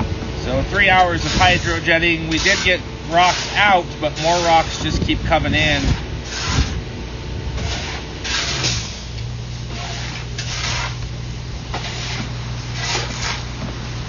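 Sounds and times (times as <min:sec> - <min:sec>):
low machine hum: 0:00.0 - 0:14.0
rasping swishes: 0:01.0 - 0:05.0, 0:05.6 - 0:06.8, 0:07.6 - 0:09.0, 0:09.7 - 0:11.0, 0:11.7 - 0:13.5.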